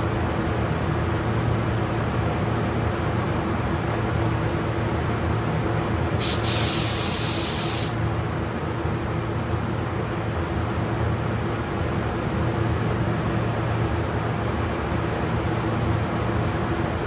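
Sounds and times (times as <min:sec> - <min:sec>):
spray gun hissing: 0:06.2 - 0:08.0.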